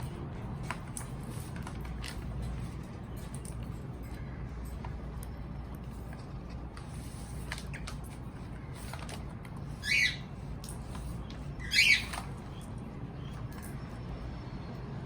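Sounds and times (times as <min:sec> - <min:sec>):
cockatiel squawks: 0:09.8 - 0:10.3, 0:11.6 - 0:12.2.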